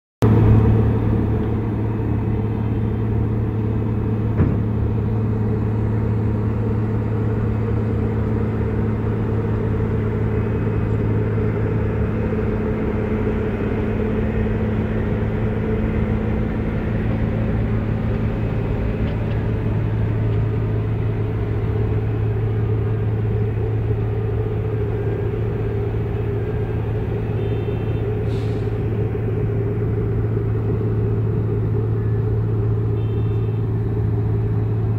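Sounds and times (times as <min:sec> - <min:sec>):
brief knock: 0:04.4 - 0:04.7.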